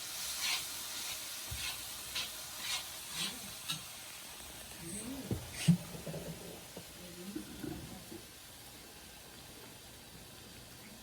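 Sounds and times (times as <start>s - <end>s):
spatula scraping a pan: 0.0s - 3.9s
food sizzling in a frying pan: 0.0s - 11.0s.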